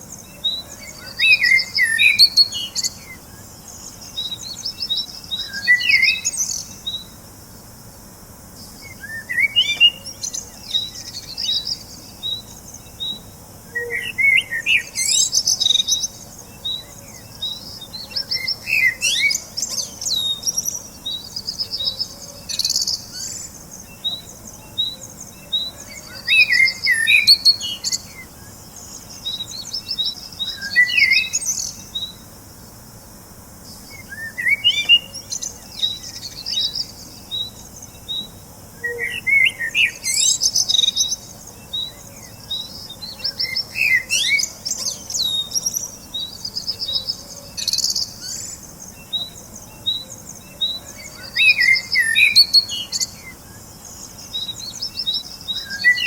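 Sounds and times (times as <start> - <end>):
songbirds chirping and singing: 0.0 - 56.0.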